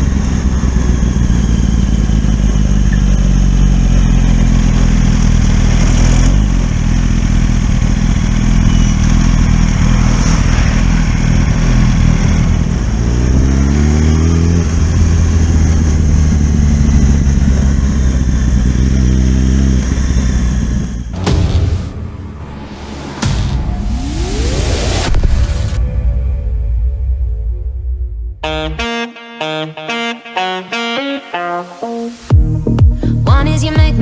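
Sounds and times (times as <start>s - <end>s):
motorcycle engine accelerating: 0.0s - 25.9s.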